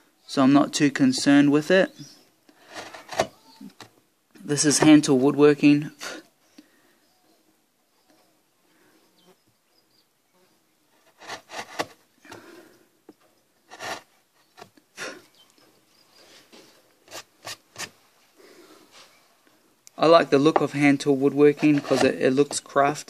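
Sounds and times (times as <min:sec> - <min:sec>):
chisel scraping through wood: 0:02.6 - 0:03.4, 0:11.0 - 0:12.0, 0:13.7 - 0:14.8, 0:17.0 - 0:18.0, 0:20.5 - 0:22.6.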